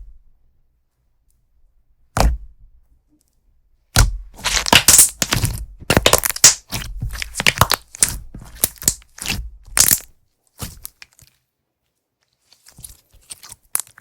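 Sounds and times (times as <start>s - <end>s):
slime squished by hand: 4.0s - 11.2s.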